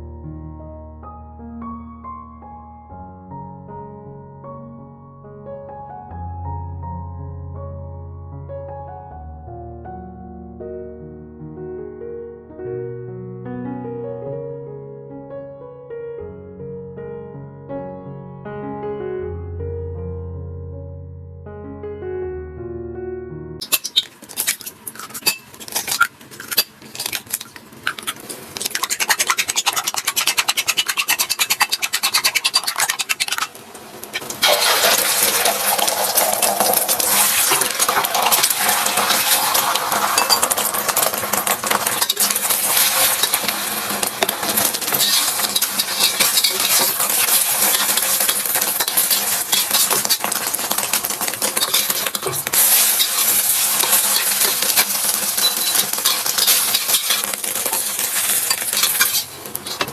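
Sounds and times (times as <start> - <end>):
utensil clicking against pan: 23.6 - 33.5, 35.4 - 59.9
spatula scraping and tapping: 23.6 - 33.6, 35.3 - 59.9
food sizzling in a pan: 23.6 - 59.9.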